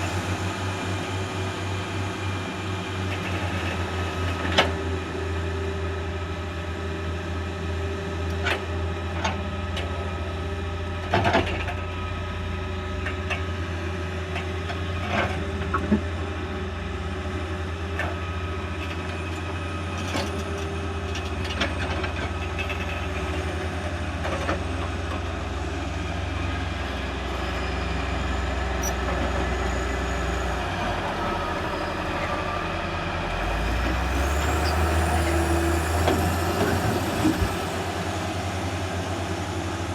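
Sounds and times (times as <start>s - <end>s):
truck engine running: 0.0s - 5.2s, 21.3s - 39.9s.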